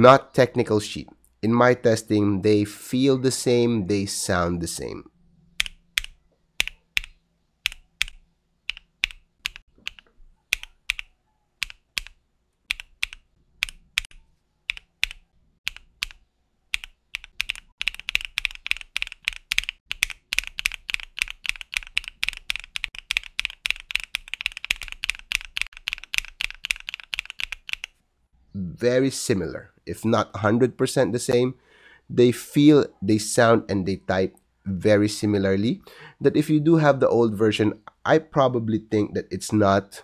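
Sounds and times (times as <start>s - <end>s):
mechanical keyboard typing: 5.6s - 28.0s.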